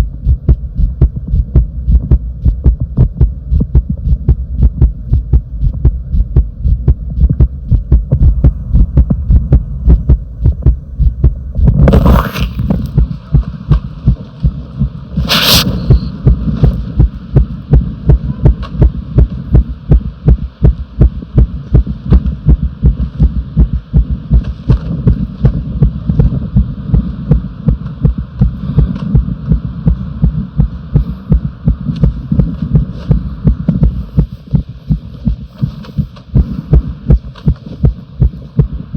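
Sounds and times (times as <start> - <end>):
heartbeat thumping: 0.0 - 38.9
loud scraping noise: 11.6 - 12.9, 15.2 - 16.1.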